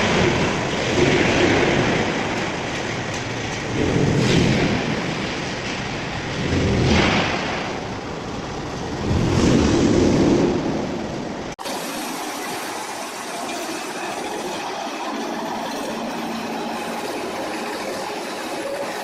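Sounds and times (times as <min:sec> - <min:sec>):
steady machine hum: 0:10.4 - 0:19.0
wood shredder grinding wood: 0:11.6 - 0:19.0.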